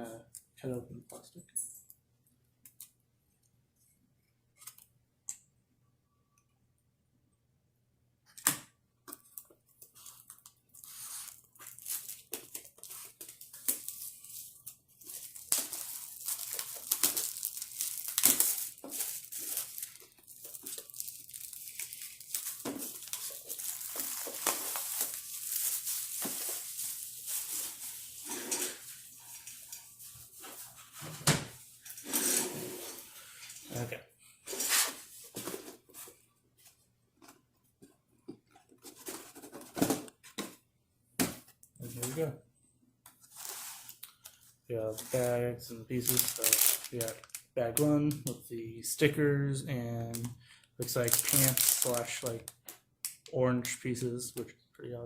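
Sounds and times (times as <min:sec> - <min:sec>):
plastic wrapping torn and crinkled: 0:09.1 - 0:29.7, 0:45.9 - 0:47.9, 0:50.1 - 0:53.8.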